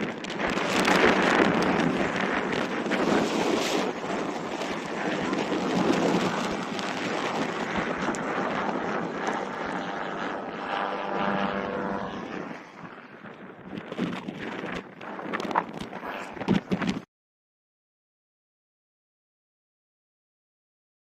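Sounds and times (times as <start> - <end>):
distant engine drone: 0.0 - 16.8
wind buffeting microphone: 0.0 - 17.1.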